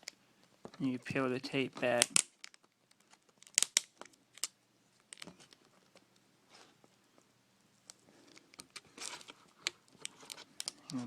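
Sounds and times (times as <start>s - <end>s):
adhesive tape peeling crackles: 1.8s - 5.6s, 7.9s - 11.0s.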